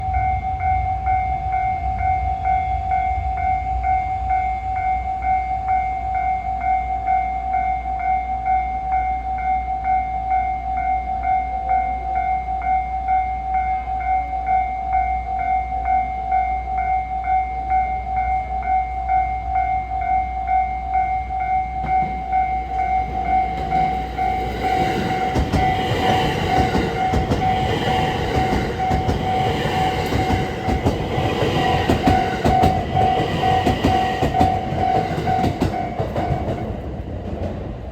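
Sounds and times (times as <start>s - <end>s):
level crossing warning bell: 0.0s - 36.9s
electric train rumbling past: 14.9s - 37.9s.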